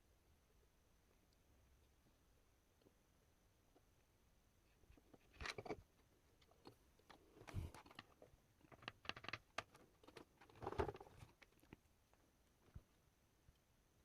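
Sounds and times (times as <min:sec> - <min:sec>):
small objects clicking and rustling: 0:04.9 - 0:11.8.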